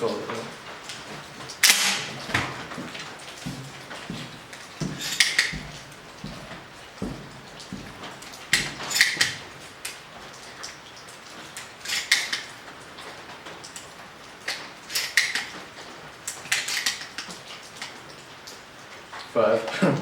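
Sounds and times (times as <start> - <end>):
sharp metallic clicks: 1.6 - 2.7, 14.5 - 15.6.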